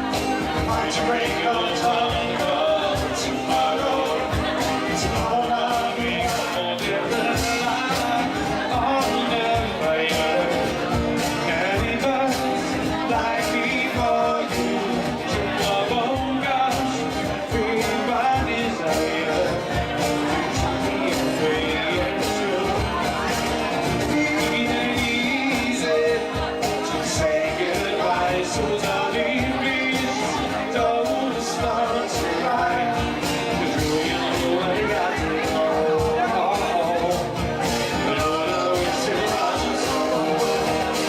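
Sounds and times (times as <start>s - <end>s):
rock and roll song: 0.0s - 41.0s
steady drum beat: 0.0s - 41.0s.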